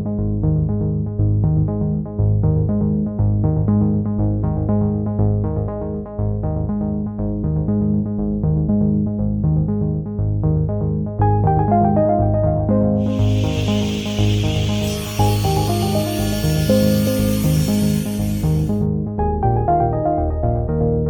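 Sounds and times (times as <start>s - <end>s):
synthesizer music with pulsing notes: 11.1s - 21.0s.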